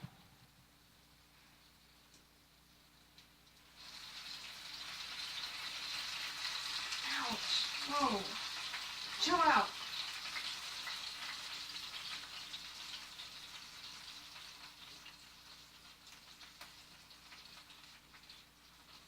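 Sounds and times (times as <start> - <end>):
chicken sizzling in a hot pan: 3.5 - 19.0.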